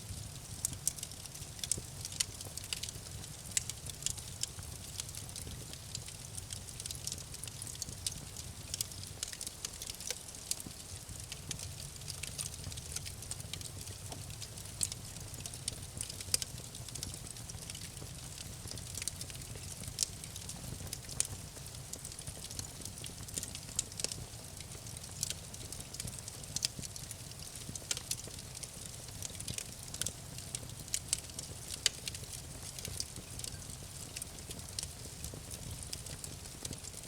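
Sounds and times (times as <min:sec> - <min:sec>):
low rumble of flames: 0:00.0 - 0:37.0
wood crackling and popping: 0:00.1 - 0:37.0.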